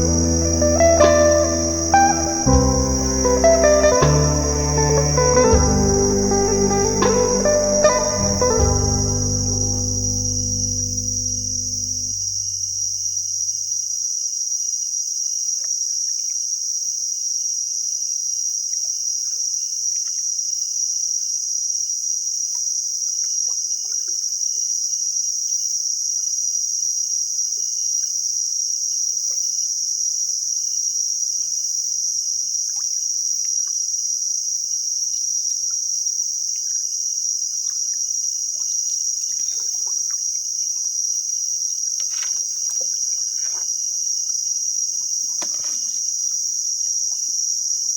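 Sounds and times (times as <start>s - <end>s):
faint steady tone: 0.0s - 13.7s
insect chorus drone: 0.0s - 13.7s.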